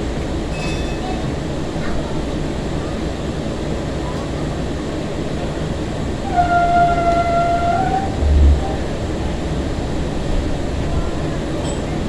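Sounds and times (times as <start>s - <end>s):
light-rail car rumbling: 0.0s - 12.0s
train horn: 6.2s - 8.8s.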